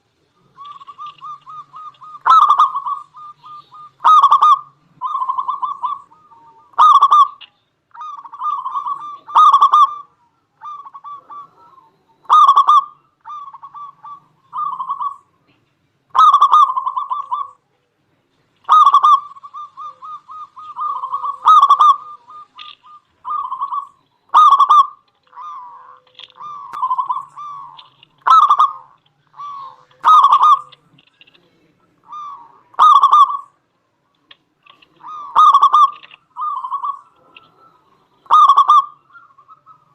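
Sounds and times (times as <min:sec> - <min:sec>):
zebra dove cooing: 0:00.0 - 0:39.9.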